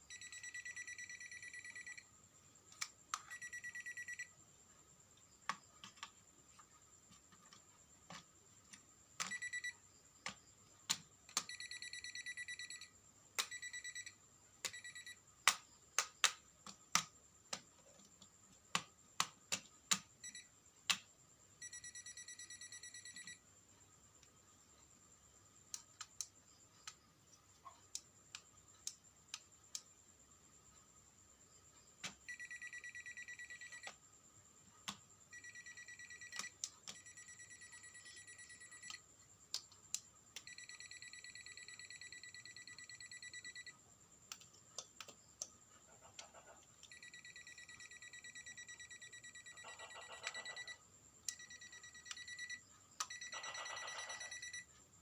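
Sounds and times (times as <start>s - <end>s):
faint high whine: 0.0s - 10.4s, 11.4s - 15.8s, 20.2s - 39.5s, 40.1s - 44.0s, 46.8s - 55.0s
electronic buzzer: 46.9s - 54.6s.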